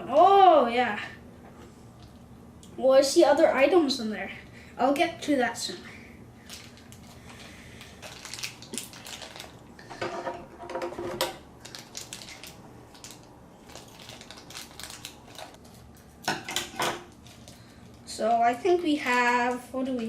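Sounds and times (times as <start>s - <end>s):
plastic packaging crinkling: 6.4s - 9.9s, 11.5s - 16.3s, 17.1s - 18.1s.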